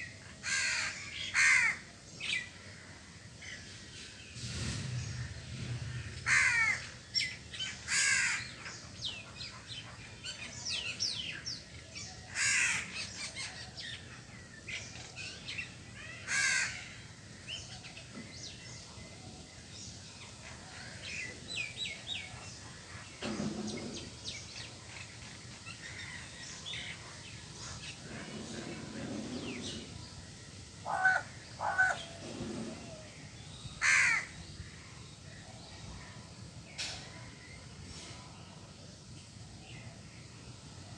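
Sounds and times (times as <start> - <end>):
crow cawing: 0.4 - 1.8, 6.3 - 6.9, 7.9 - 8.5, 16.3 - 16.8, 30.8 - 32.0, 33.8 - 34.3.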